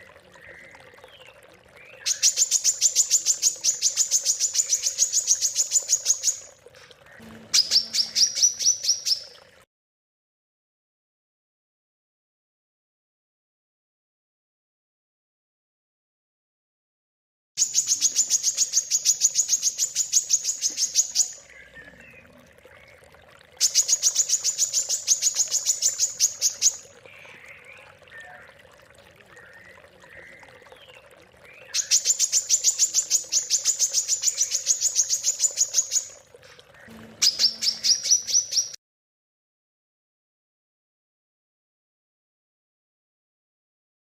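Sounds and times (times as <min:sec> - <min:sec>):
faint bird chirps: 0:00.0 - 0:09.5, 0:17.6 - 0:38.8
songbird fast trills: 0:07.6 - 0:09.3, 0:36.8 - 0:38.8.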